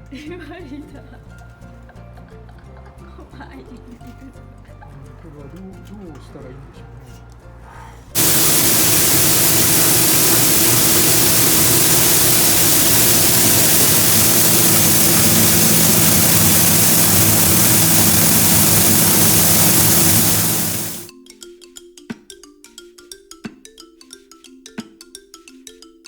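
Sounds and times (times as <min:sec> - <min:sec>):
constant low hum: 0:08.2 - 0:21.1
machine rushing noise: 0:08.2 - 0:21.1.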